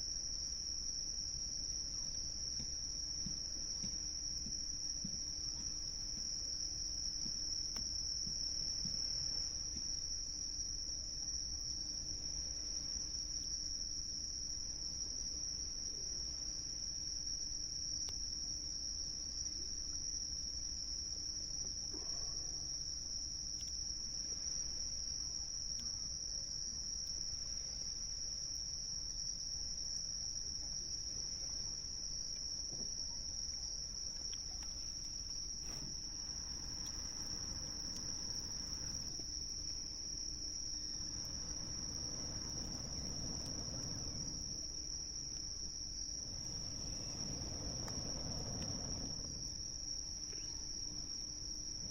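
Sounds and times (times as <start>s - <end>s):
crickets trilling: 0.0s - 51.9s
soft waves: 32.8s - 50.9s.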